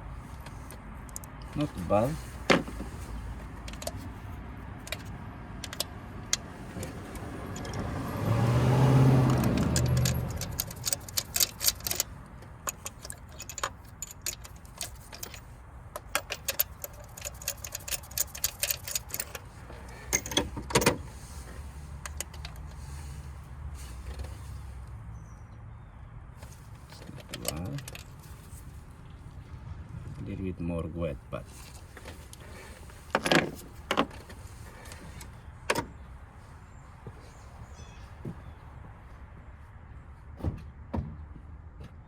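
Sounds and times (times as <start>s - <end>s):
metal parts clicking and jingling: 0.3s - 24.5s, 26.4s - 28.7s, 31.5s - 36.0s.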